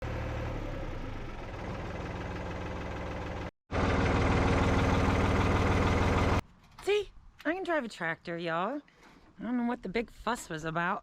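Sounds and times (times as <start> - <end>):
heavy equipment engine running: 0.1 - 6.4.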